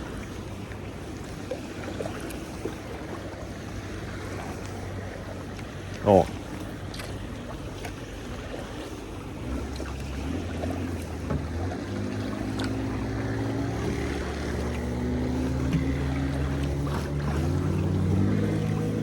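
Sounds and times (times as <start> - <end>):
water noise: 0.0 - 19.0
wind: 0.0 - 19.0
motor engine running: 9.3 - 19.0.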